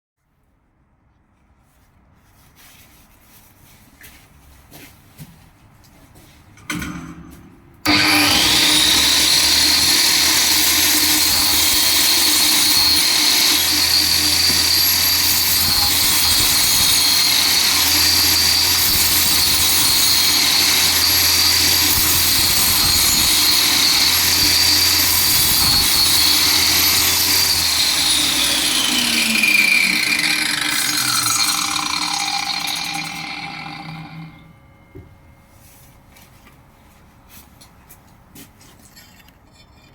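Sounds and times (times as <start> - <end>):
angle grinder whining: 7.8 - 35.1.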